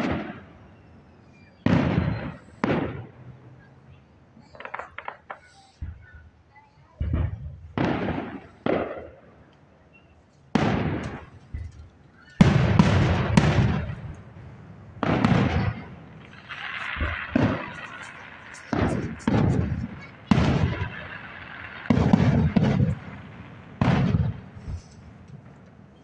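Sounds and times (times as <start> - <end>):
crackling: 4.4 - 6.2, 10.3 - 26.0
sharp bangs: 10.6 - 25.8.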